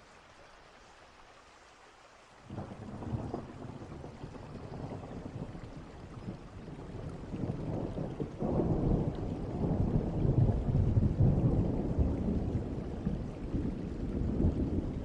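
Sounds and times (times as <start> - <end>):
rain hiss: 0.0 - 15.0
low thunder rumble: 2.5 - 15.0.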